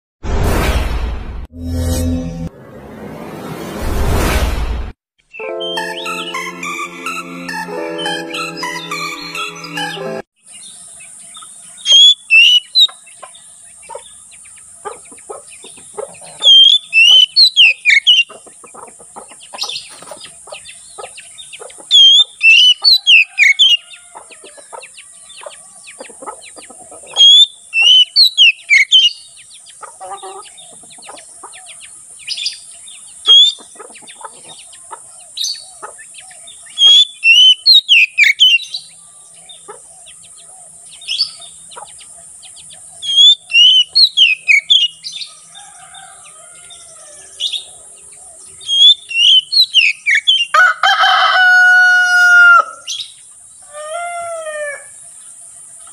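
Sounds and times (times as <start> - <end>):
bird singing whistled notes: 11.8 - 12.9, 16.4 - 18.2, 22.0 - 23.8, 27.2 - 29.2, 33.3 - 33.6, 36.7 - 38.9, 43.0 - 45.2, 48.6 - 50.5.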